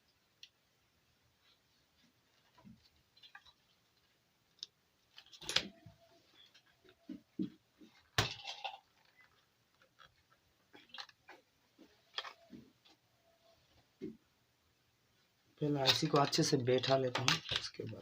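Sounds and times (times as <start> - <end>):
small clicks and knocks: 15.8 - 18.0.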